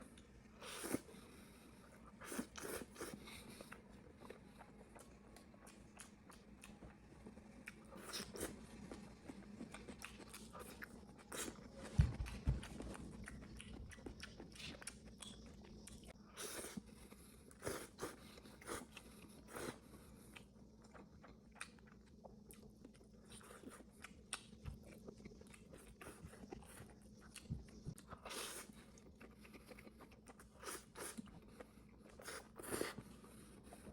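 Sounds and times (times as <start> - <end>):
person chewing noodles: 0.1 - 33.9.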